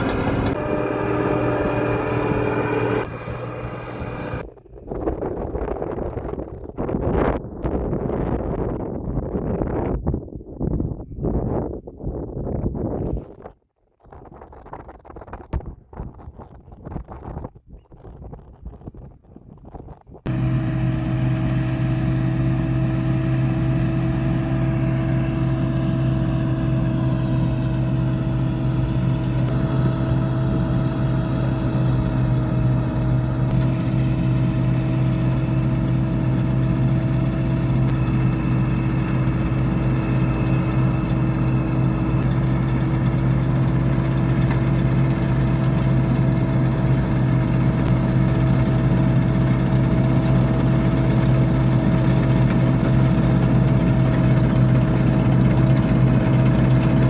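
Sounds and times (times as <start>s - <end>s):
machine whining: 0.0s - 4.5s, 20.3s - 57.0s
combine harvester engine drone: 0.0s - 4.8s, 20.3s - 57.0s.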